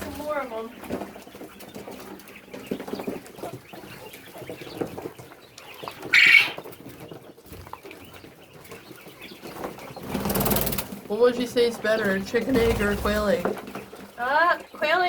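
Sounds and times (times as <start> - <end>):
poultry clucking: 0.0 - 15.0.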